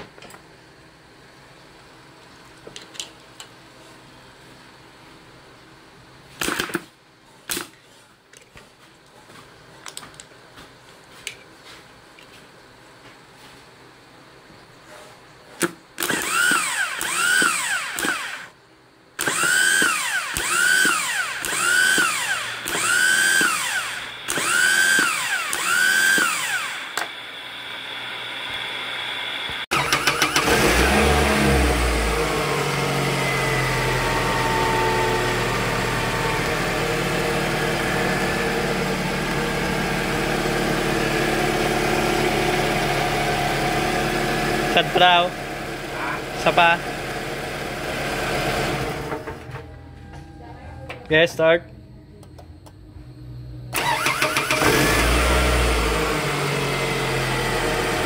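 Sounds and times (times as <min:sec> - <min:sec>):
starter motor cranking engine: 0:16.0 - 0:18.5, 0:19.2 - 0:27.1, 0:29.7 - 0:49.3, 0:53.7 - 0:58.0
car engine running: 0:28.1 - 0:49.4.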